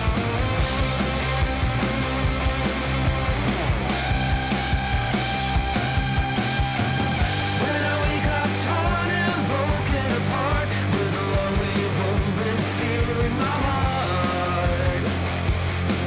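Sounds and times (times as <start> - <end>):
rock music with guitar: 0.0 - 16.0.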